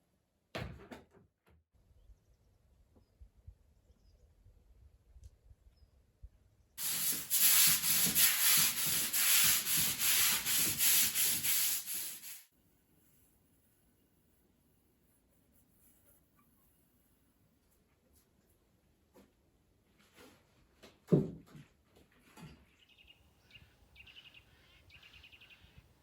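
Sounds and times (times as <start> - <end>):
surface scrubbed by hand: 6.8 - 12.4.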